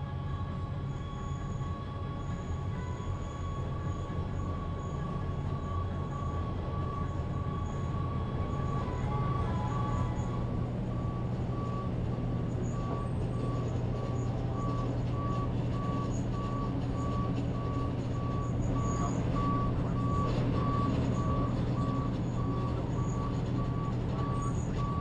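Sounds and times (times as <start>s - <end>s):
truck engine humming: 0.0s - 25.0s
reversing alarm beeping: 0.4s - 25.0s.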